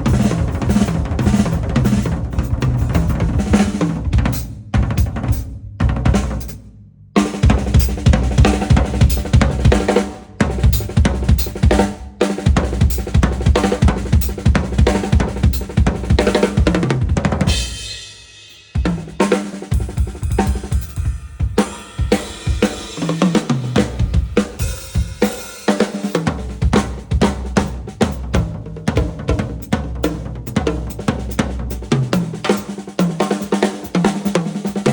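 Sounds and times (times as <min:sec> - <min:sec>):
cymbals: 0:00.0 - 0:05.5, 0:17.5 - 0:26.6, 0:32.5 - 0:34.9
snare drum: 0:00.0 - 0:06.6, 0:07.2 - 0:34.9
kick drum: 0:00.0 - 0:06.7.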